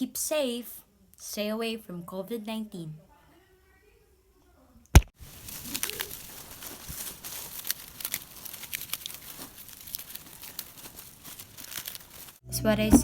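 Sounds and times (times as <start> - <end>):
rustling and crackling clicks: 5.0 - 12.4.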